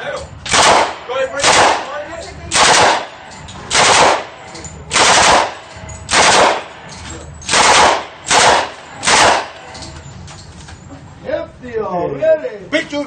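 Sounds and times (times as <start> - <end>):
submachine gun full-auto bursts: 2.5 - 3.1, 3.7 - 4.2, 4.9 - 6.6, 7.5 - 9.5.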